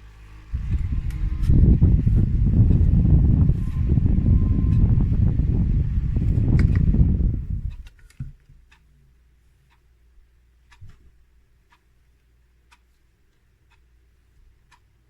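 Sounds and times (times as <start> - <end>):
low steady hum: 0.0 - 15.0
clock ticking faintly: 7.5 - 15.0.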